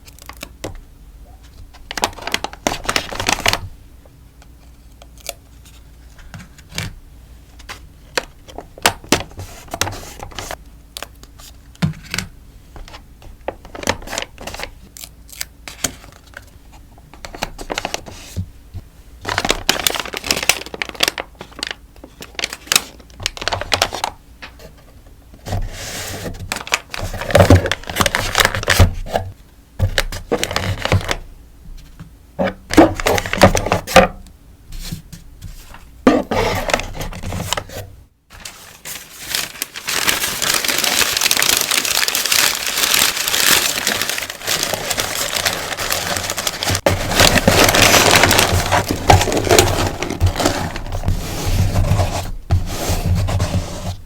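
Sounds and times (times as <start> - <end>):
plastic and paper crinkling: 1.6 - 3.7, 12.8 - 18.4, 19.2 - 24.9, 25.5 - 31.2, 35.5 - 54.0.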